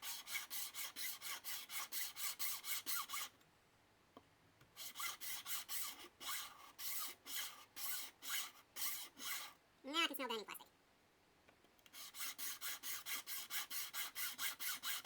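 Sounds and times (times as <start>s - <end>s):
hacksaw cutting plastic: 0.0s - 3.4s, 11.9s - 15.0s.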